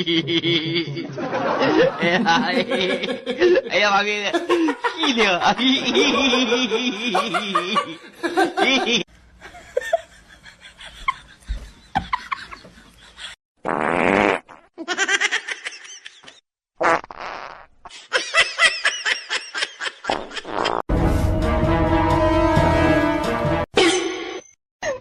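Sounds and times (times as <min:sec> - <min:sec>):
people laughing: 0:00.0 - 0:13.4
buzzy fart-like blasts: 0:13.6 - 0:14.7, 0:16.8 - 0:17.7, 0:20.2 - 0:21.2.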